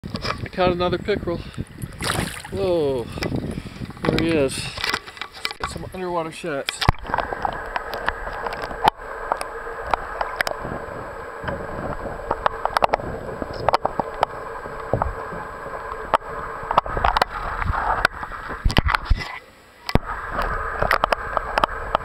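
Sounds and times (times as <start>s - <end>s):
muffled underwater water hiss: 1.0s - 22.0s
sharp clicks and knocks: 4.0s - 5.9s.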